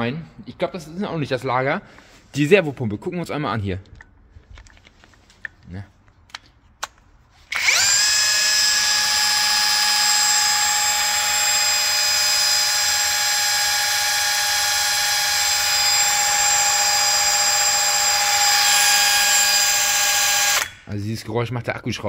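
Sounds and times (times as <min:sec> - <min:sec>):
cordless drill whining: 0:07.5 - 0:20.8.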